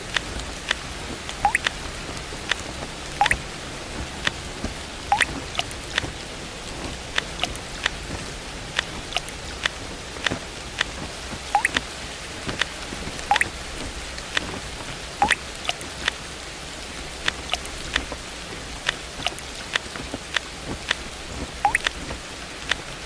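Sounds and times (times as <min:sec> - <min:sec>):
rain hiss: 0:00.0 - 0:23.0
drops plinking into water: 0:11.5 - 0:11.8.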